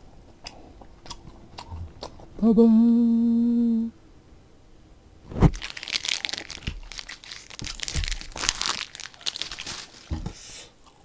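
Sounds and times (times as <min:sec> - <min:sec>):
plastic packaging crinkling: 0:05.3 - 0:10.6.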